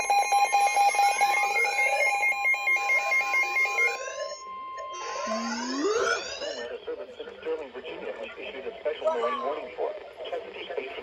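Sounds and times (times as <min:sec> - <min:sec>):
pulsing alarm beeps: 0:00.0 - 0:06.7
steady warning tone: 0:00.0 - 0:07.0.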